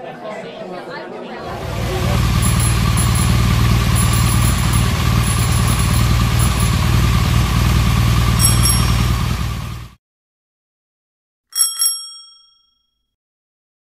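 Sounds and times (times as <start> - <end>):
engine idling: 1.4 - 10.0
high bell-like ding: 8.4 - 9.2, 11.6 - 13.0.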